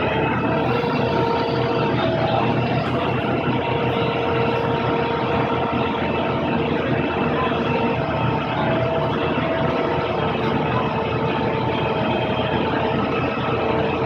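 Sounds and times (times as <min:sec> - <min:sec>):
engine running steadily: 0:00.0 - 0:14.0
faint steady tones: 0:00.0 - 0:14.0.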